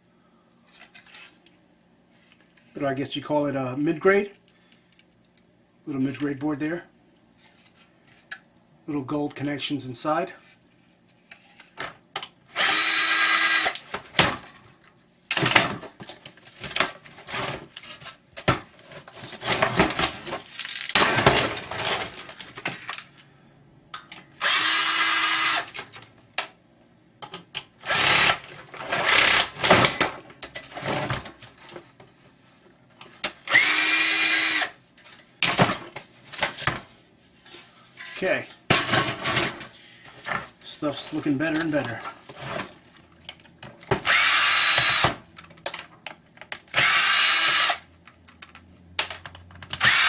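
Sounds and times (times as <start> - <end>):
power drill running: 12.5 - 13.8, 24.4 - 25.7, 27.8 - 29.5, 33.5 - 34.7, 44.0 - 45.2, 46.7 - 47.8, 49.8 - 50.0.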